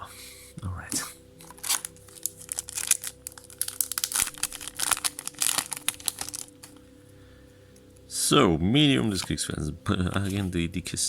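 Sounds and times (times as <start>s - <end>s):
foil wrapper crinkling and tearing: 1.4s - 6.8s.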